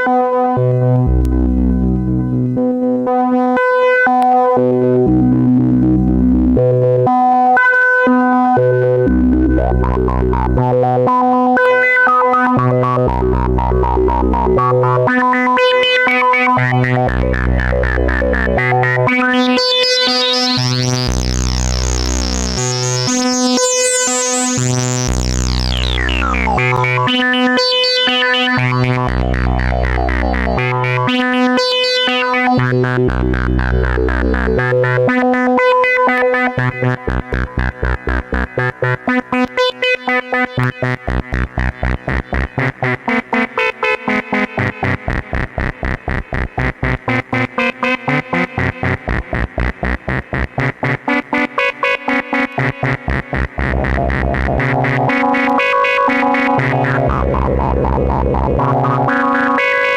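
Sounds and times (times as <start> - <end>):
synthesizer bass line: 9.1 - 11.1, 12.6 - 15.1, 16.6 - 27.8, 28.6 - 31.5, 32.6 - 35.2, 36.6 - 39.1, 40.6 - 43.2, 43.9 - 59.9
bright synth sweep: 53.1 - 59.9.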